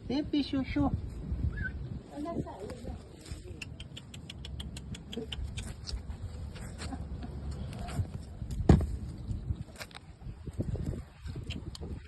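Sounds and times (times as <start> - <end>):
thump: 8.6 - 9.0.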